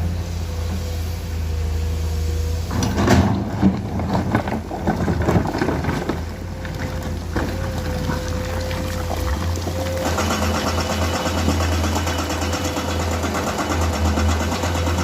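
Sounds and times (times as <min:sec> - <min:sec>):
excavator diesel engine running: 0:00.0 - 0:15.0
rock clattering and knocking: 0:03.0 - 0:10.2.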